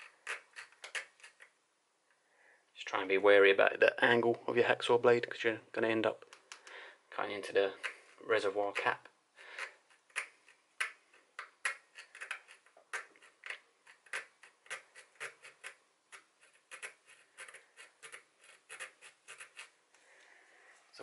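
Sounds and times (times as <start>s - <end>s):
hacksaw blade scraping metal: 16.4s - 19.7s.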